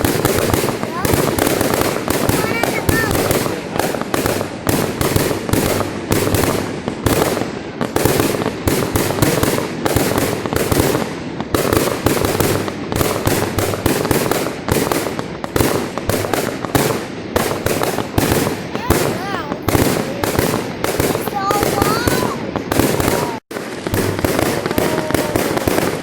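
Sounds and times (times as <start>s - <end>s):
fireworks exploding: 0.0s - 26.0s.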